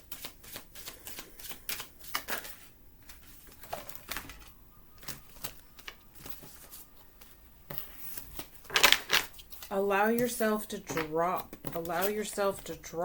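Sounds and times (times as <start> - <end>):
cards being shuffled by hand: 0.0 - 10.4.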